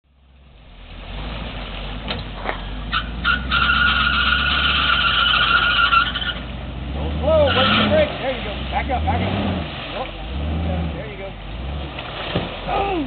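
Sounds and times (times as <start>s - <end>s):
vehicle engine rumbling: 0.0s - 13.0s
high squeal: 2.9s - 6.4s.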